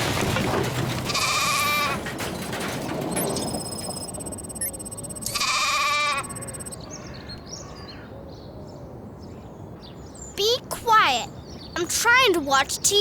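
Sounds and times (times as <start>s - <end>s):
cartoon animal bleat: 5.2s - 6.4s.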